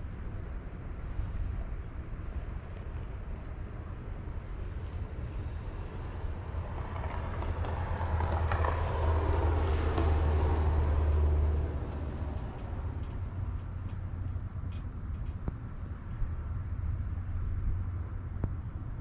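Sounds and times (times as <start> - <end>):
steady low rumble: 0.0 - 19.0
vehicle passing on snowy road: 4.5 - 14.3.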